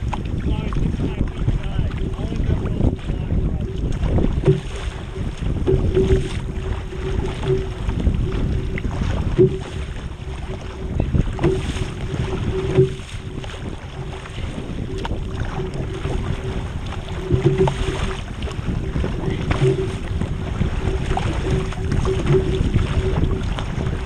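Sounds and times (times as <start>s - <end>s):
water sloshing and splashing: 0.0s - 24.0s
wind buffeting microphone: 0.0s - 24.0s.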